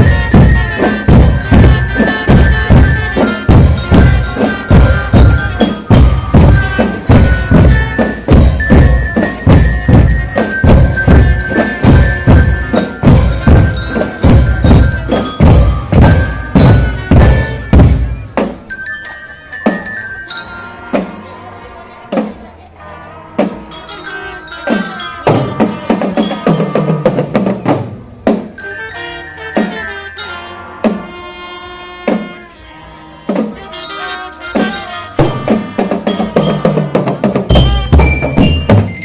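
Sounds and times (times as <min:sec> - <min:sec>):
marching drums: 0:00.0 - 0:18.7, 0:24.6 - 0:28.7, 0:29.4 - 0:31.3, 0:32.0 - 0:32.4, 0:33.3 - 0:39.0
bell-like mallet notes: 0:00.0 - 0:22.0, 0:22.8 - 0:27.5, 0:28.5 - 0:31.1, 0:33.3 - 0:39.0.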